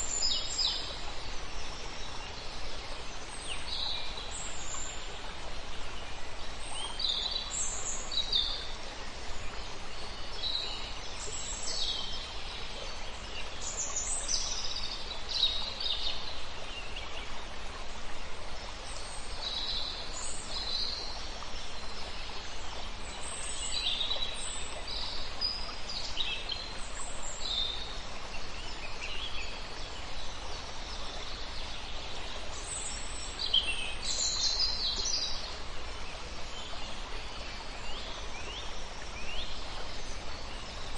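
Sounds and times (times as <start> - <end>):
small river rushing: 0.0 - 40.9.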